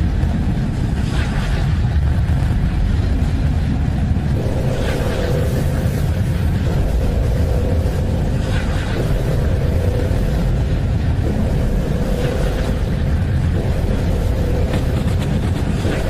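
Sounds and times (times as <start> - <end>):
low rumbling drone: 0.0 - 16.0
soft whooshing swells: 4.3 - 16.0.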